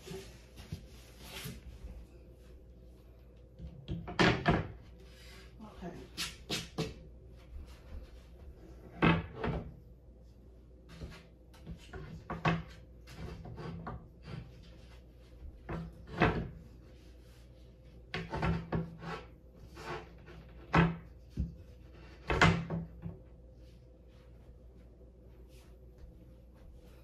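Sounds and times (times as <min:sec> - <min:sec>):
desk pieces knocking and clunking: 0:03.8 - 0:04.8.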